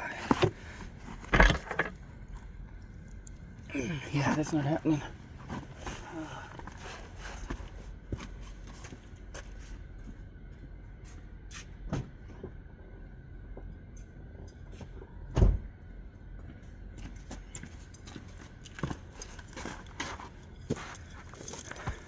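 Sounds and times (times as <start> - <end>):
metallic knocks and clicks: 20.0 - 22.0.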